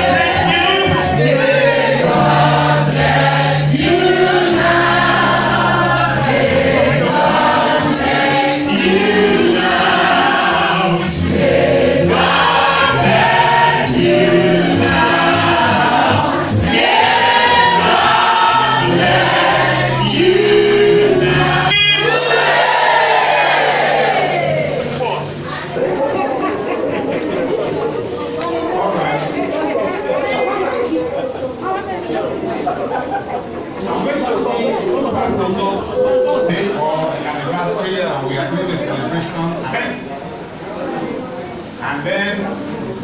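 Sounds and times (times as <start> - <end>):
low held bass notes: 0.0 - 21.7
choir singing gospel: 0.0 - 43.0.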